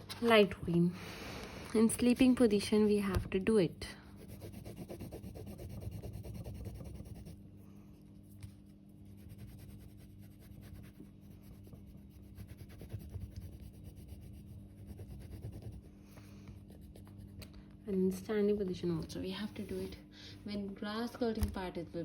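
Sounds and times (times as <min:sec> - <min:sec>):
faint steady hum: 0:00.0 - 0:22.0
colouring stick scratching paper: 0:01.8 - 0:03.0, 0:04.2 - 0:07.4, 0:08.2 - 0:15.9.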